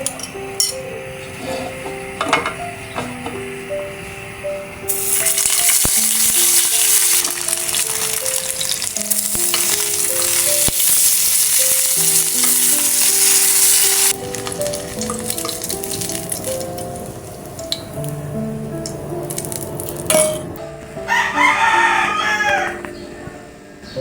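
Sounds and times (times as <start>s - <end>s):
gentle music melody: 0.0s - 24.0s
food frying sizzle: 2.1s - 20.6s.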